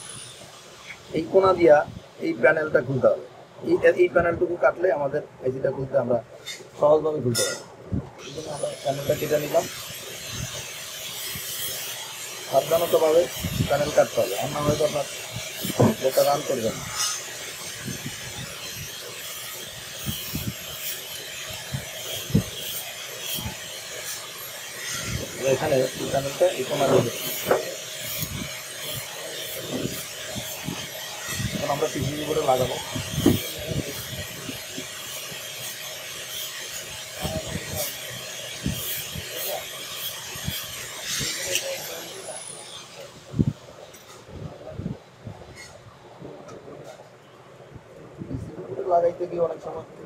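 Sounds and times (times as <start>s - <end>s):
steady hiss: 0.0s - 5.7s
hand tool scraping circuit board: 7.3s - 43.0s.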